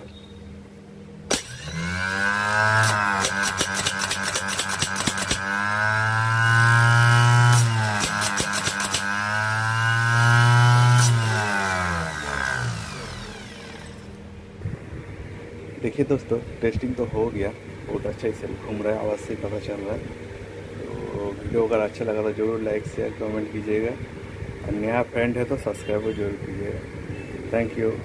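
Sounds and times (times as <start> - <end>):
starter motor whining: 1.3 - 14.8
rapid sharp clicks: 2.8 - 5.5, 7.5 - 9.2
sharp click: 7.5 - 9.1.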